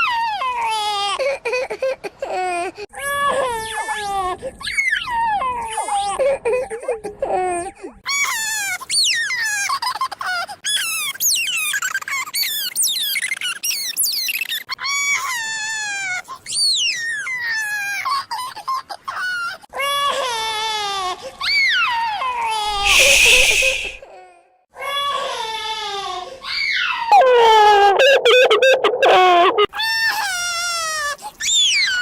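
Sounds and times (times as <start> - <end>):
cartoon piglet crying: 8.1 - 13.9, 22.4 - 24.0, 26.6 - 32.0
loud hissing noise: 22.7 - 24.0.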